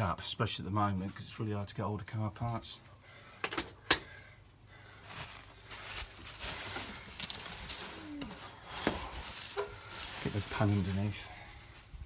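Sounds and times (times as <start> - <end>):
cap rustling and scraping: 5.0 - 12.0.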